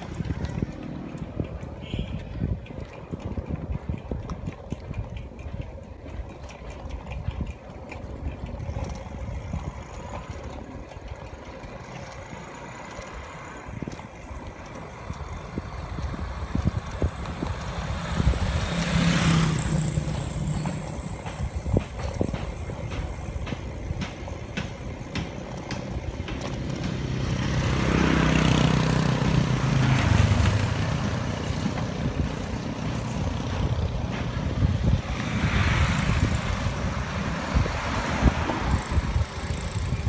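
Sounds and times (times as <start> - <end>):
vehicle passing: 11.6 - 21.4, 26.3 - 40.0.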